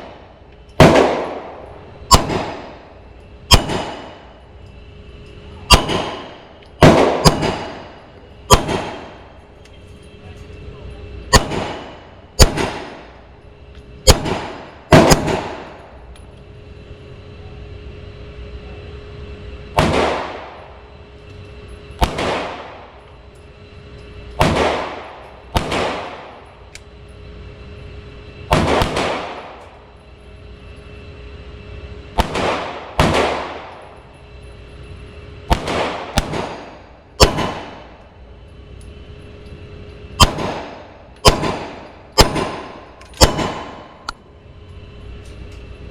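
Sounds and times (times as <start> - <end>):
pistol shots echoing: 0.0 - 2.9, 3.5 - 4.4, 5.7 - 9.4, 11.3 - 13.2, 14.0 - 15.8, 19.8 - 20.8, 22.0 - 23.0, 24.4 - 26.5, 28.5 - 29.6, 32.2 - 33.9, 35.4 - 38.0, 40.2 - 44.0.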